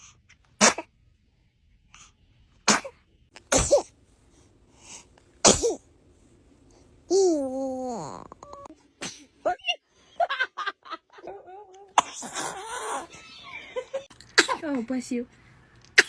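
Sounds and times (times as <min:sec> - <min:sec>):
baby sneezing: 0:00.6 - 0:00.9, 0:02.7 - 0:03.9, 0:05.4 - 0:05.8, 0:14.4 - 0:14.7.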